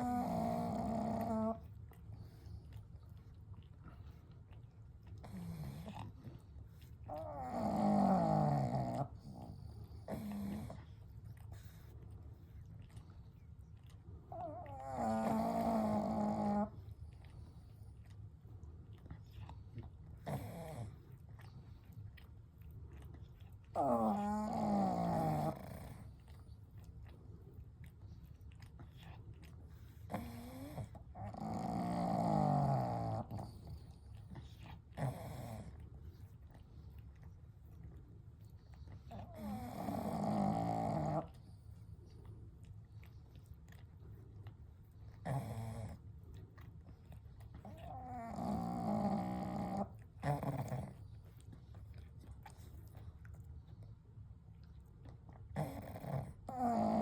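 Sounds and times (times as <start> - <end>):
dogs snoring: 0.0 - 2.8, 5.0 - 11.9, 14.3 - 18.1, 19.4 - 21.9, 22.9 - 26.6, 28.6 - 37.3, 38.5 - 42.2, 44.9 - 53.8, 55.2 - 57.0.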